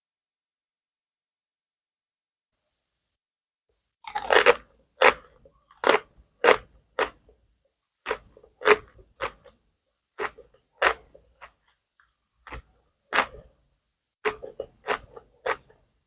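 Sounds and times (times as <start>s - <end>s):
person chewing crunchy food: 4.0s - 7.4s, 8.0s - 9.6s, 10.2s - 13.6s, 14.2s - 15.9s.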